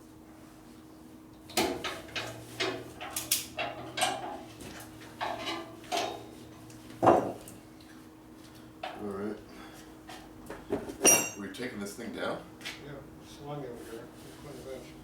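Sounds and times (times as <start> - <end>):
metal tools clanking and knocking: 1.8 - 4.4, 11.0 - 11.5.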